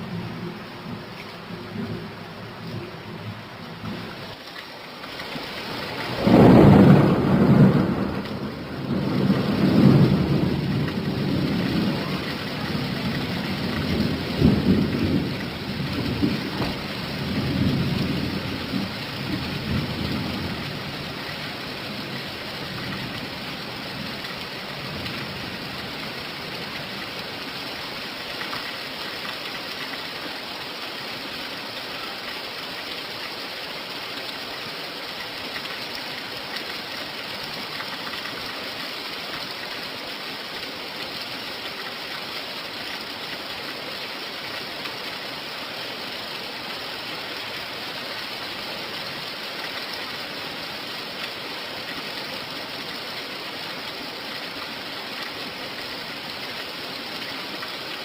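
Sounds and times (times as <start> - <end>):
steady rain: 0.0 - 58.0
thunder clap and rumble: 6.0 - 20.8.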